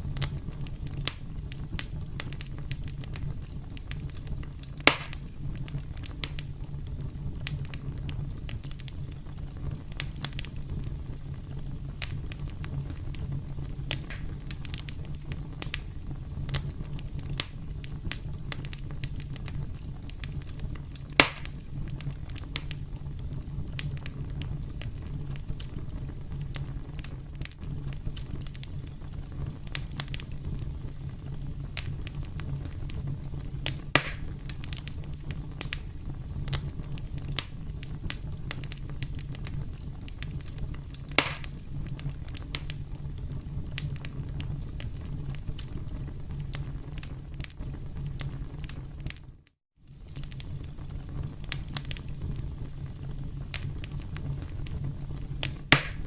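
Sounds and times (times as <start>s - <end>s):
campfire crackling: 0.0s - 56.0s
fire low rumble: 0.0s - 56.0s
loud fire pops: 0.0s - 56.0s.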